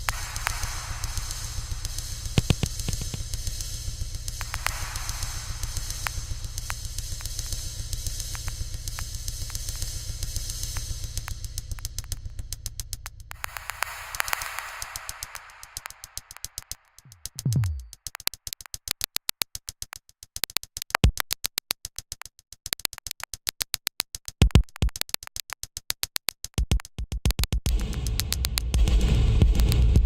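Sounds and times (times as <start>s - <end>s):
dense rumbling electronic texture: 0.0s - 17.9s, 27.7s - 30.0s
rapid clicking electronic pulses: 0.0s - 30.0s
low tone dropping in pitch: 17.1s - 17.9s
heavy low electronic hits: 17.2s - 17.9s.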